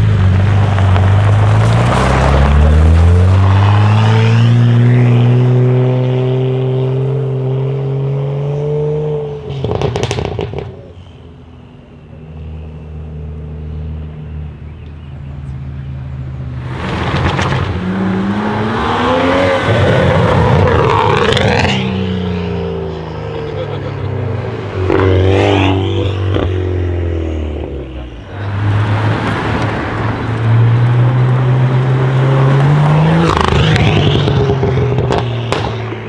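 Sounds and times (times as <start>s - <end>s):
exhaust crackles and pops: 0.0s - 3.8s, 9.6s - 10.9s, 16.6s - 18.0s, 28.4s - 36.0s
exhaust crackle: 0.0s - 5.4s, 13.0s - 36.0s
car engine accelerating hard: 0.0s - 11.0s, 12.0s - 36.0s
quiet engine hum: 10.6s - 18.6s.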